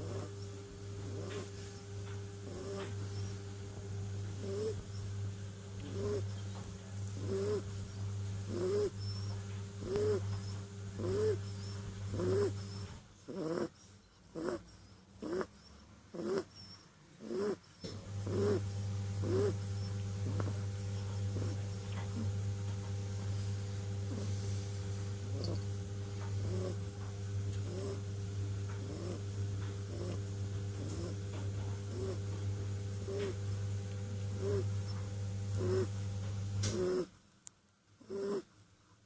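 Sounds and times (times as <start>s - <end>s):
kitten snoring: 0.0s - 0.4s, 1.0s - 1.6s, 2.4s - 3.0s, 4.3s - 4.9s, 5.8s - 6.4s, 7.1s - 16.6s, 17.2s - 22.4s, 23.4s - 25.7s, 26.4s - 26.9s, 27.5s - 28.1s, 28.8s - 32.4s, 33.0s - 33.4s, 34.3s - 34.8s, 35.5s - 36.0s, 36.6s - 37.2s, 38.0s - 38.5s
steady low hum: 0.0s - 38.6s.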